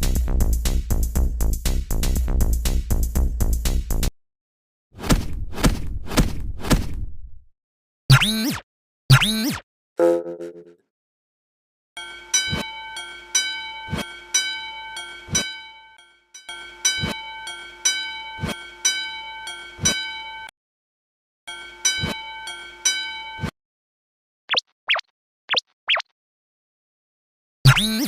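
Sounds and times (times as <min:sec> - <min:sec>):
level crossing warning bell: 0:12.0 - 0:20.5, 0:21.5 - 0:23.5.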